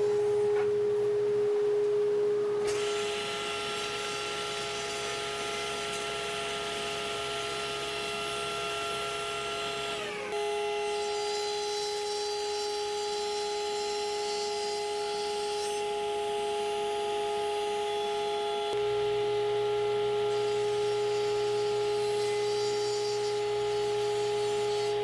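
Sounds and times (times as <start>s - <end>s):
low hum: 0.0s - 10.4s
power tool motor whining: 2.6s - 25.0s.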